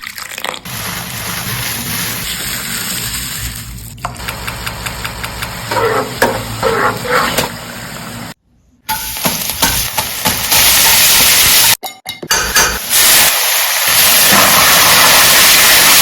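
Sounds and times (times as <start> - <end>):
food sizzling in a pan: 0.7 - 3.6, 8.9 - 11.8, 12.6 - 16.0.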